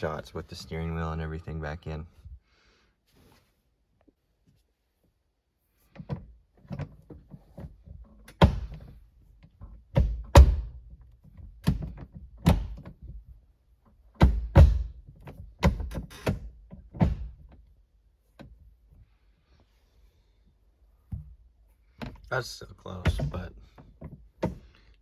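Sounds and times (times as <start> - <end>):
gear shifter clunking: 21.1 - 24.7.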